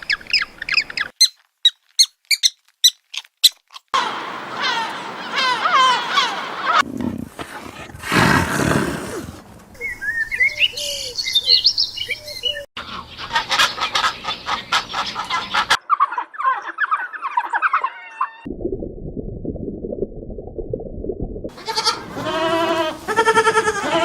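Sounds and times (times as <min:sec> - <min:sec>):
animal calls: 0:04.0 - 0:09.4.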